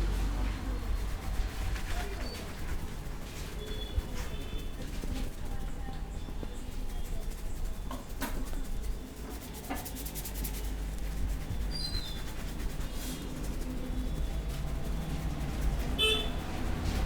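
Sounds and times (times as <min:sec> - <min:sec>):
low background rumble: 0:00.0 - 0:07.8, 0:08.6 - 0:17.0
bird chirp: 0:11.7 - 0:12.4.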